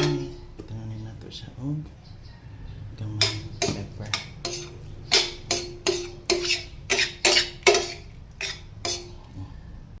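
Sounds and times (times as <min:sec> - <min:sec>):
metal utensil scraping metal pan: 0:00.0 - 0:00.4, 0:03.2 - 0:09.2.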